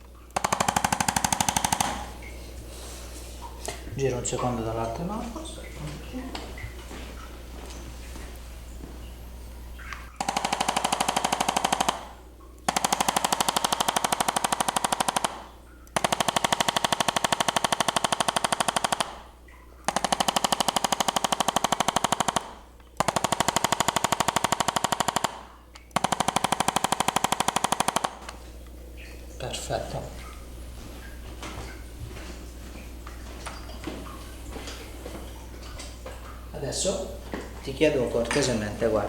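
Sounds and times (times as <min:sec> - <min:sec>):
massage gun hammering: 0:00.0 - 0:02.2, 0:10.2 - 0:28.4.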